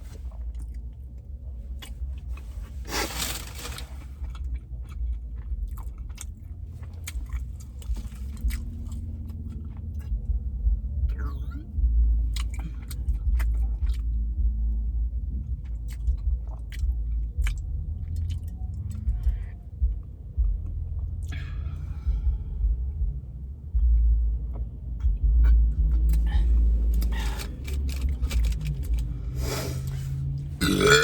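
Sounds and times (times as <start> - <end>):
person chewing food: 0.0 - 10.2, 12.3 - 14.1, 15.7 - 19.5, 25.4 - 31.0
low rumble: 0.0 - 31.0.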